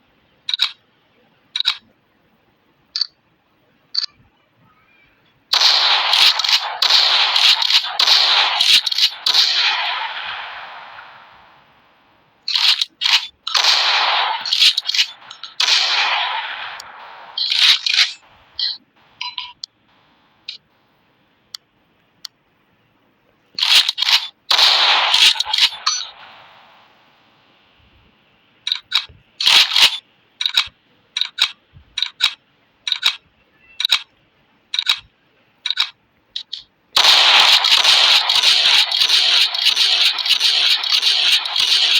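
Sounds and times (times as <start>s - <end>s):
shotgun shots with echo: 5.5s - 11.6s, 13.5s - 17.7s, 24.5s - 26.9s, 37.0s - 41.9s
loud continuous rattling: 37.0s - 41.9s.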